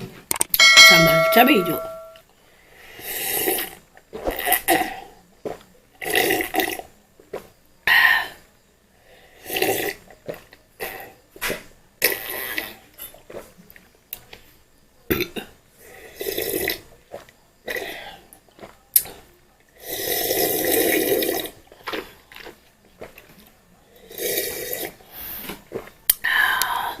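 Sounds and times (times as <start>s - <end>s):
slurping and chewing noodles: 2.9s - 6.9s, 9.2s - 11.2s, 12.0s - 13.8s, 15.8s - 26.8s.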